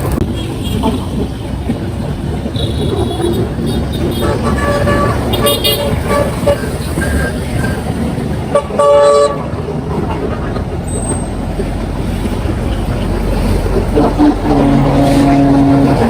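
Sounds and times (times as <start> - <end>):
highway traffic passing: 0.0 - 16.0
long low vehicle horn: 2.5 - 7.4, 8.5 - 9.6, 13.9 - 16.0.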